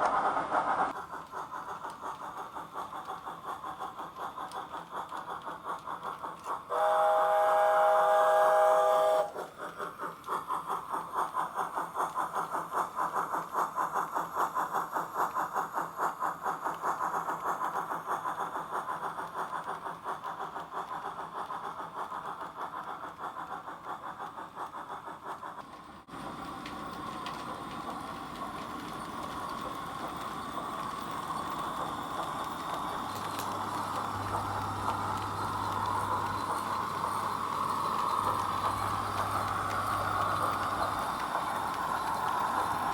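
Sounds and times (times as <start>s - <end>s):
recorded steam locomotive chuffing: 0.1s - 42.9s
steady running sound: 17.2s - 42.9s.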